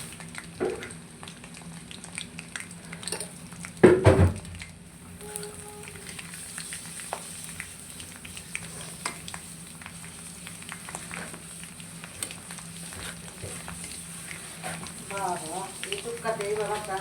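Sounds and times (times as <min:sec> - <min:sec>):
chicken frying in hot oil: 0:00.0 - 0:17.0.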